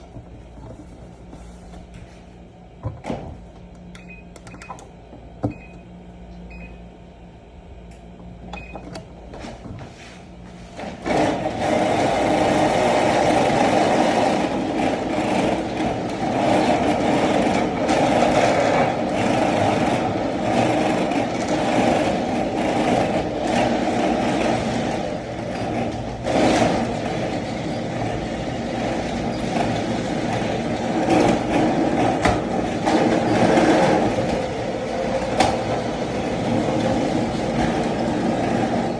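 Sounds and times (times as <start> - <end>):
treadmill running: 0.0 - 5.8, 8.2 - 38.9.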